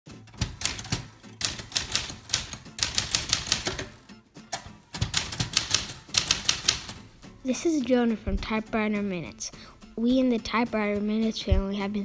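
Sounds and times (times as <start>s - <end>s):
typewriter keys clacking: 0.4s - 4.0s, 5.0s - 7.1s.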